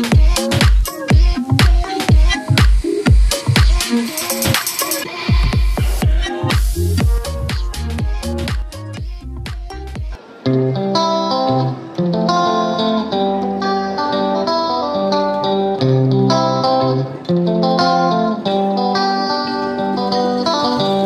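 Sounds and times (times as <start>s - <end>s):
plucked guitar music with bass: 5.8s - 21.0s.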